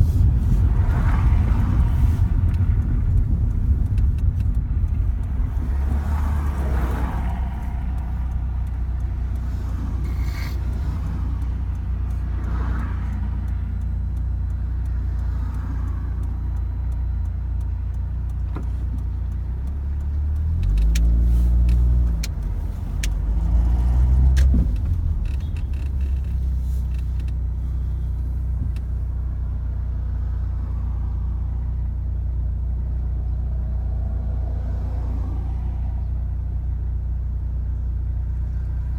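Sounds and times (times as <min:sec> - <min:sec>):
car engine idling and revving: 0:00.0 - 0:38.9.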